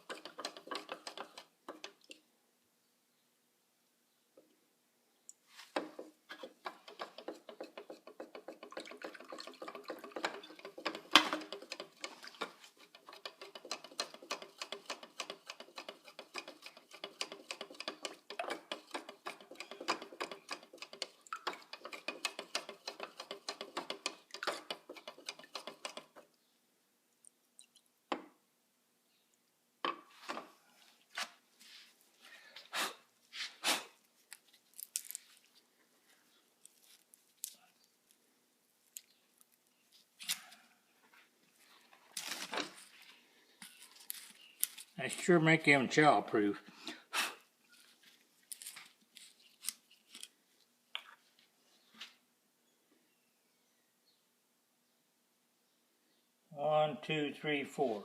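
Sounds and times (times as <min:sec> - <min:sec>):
paint mixing clinks and scrapes: 0:00.0 - 0:02.2, 0:05.4 - 0:26.3.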